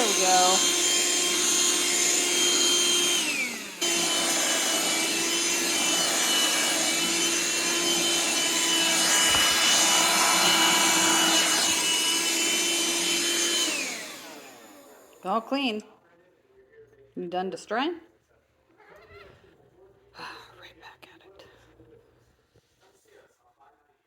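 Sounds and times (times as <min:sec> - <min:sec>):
vacuum cleaner motor whining: 0:00.0 - 0:15.6.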